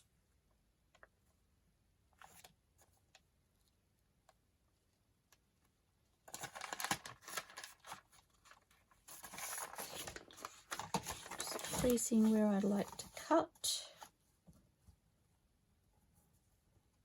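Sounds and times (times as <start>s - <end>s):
paper rustling and sliding: 6.3s - 13.1s.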